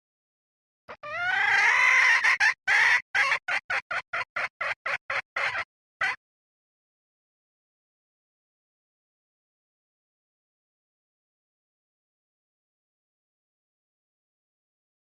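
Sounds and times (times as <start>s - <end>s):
hen calling and clucking: 0.9s - 6.2s.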